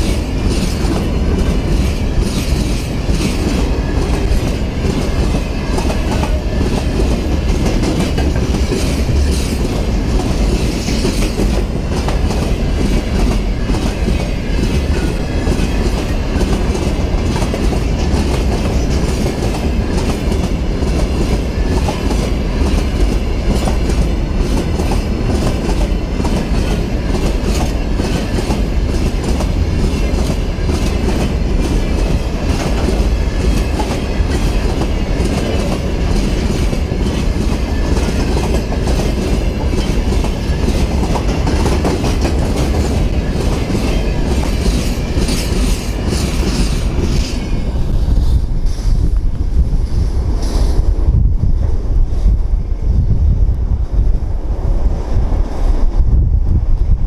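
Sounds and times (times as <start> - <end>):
train wheels clattering: 0.0 - 51.8
train low rumble: 0.0 - 57.0.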